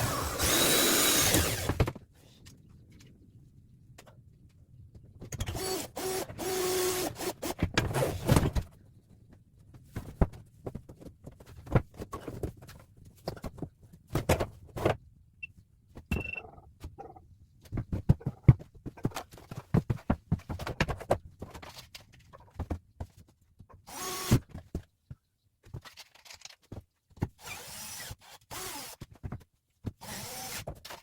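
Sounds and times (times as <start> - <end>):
power drill whirring: 0.0 - 1.8, 5.5 - 7.6, 23.9 - 24.4, 27.4 - 29.0, 30.0 - 30.6
knocks and clatters of plywood: 17.6 - 23.8.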